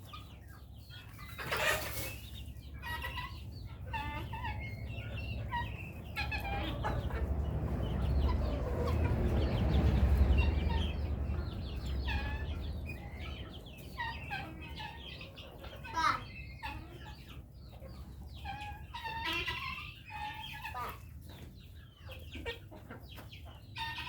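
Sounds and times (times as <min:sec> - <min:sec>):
chickens clucking: 0:00.0 - 0:24.0
low rumbling noise: 0:04.6 - 0:14.0.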